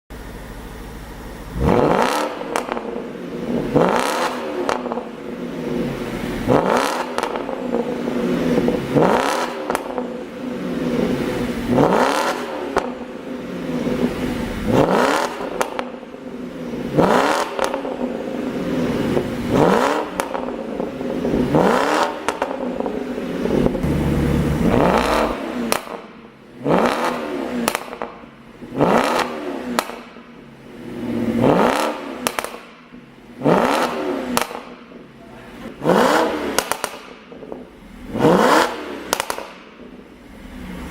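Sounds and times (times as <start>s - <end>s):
car engine revving: 1.2s - 40.9s
exhaust pops and crackles: 19.1s - 20.6s, 22.0s - 22.8s, 23.5s - 28.2s, 28.8s - 30.2s, 31.7s - 32.8s, 33.6s - 34.8s, 36.5s - 37.6s, 39.1s - 39.8s.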